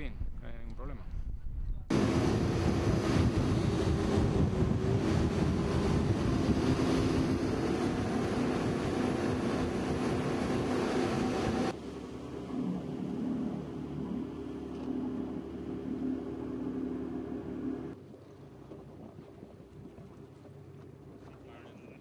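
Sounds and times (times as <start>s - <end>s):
wind buffeting microphone: 0.0s - 11.8s
steady low hum: 0.0s - 18.0s
water rushing past hull: 1.9s - 22.0s.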